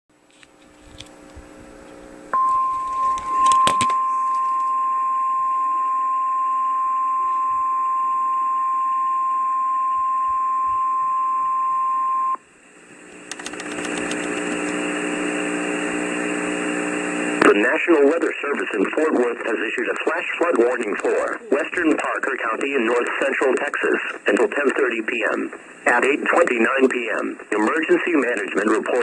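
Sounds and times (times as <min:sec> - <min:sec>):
steady warning alarm tone: 0:02.4 - 0:12.4
radio hiss: 0:10.4 - 0:29.0
clicks: 0:13.2 - 0:14.9.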